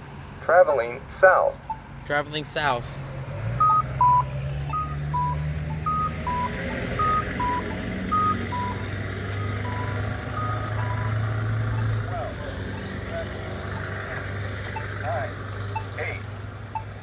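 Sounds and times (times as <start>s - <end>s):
crossing signal cuckoo tone: 3.6s - 17.0s.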